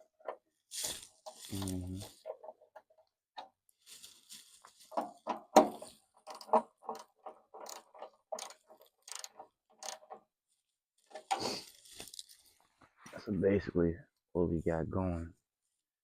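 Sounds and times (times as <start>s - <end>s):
clicks of small parts and tools: 5.0s - 10.2s.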